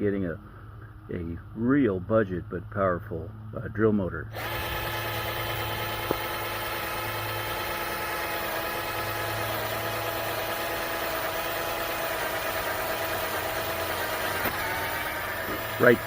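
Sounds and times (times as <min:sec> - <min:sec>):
cordless drill boring through wood: 0:04.3 - 0:16.0.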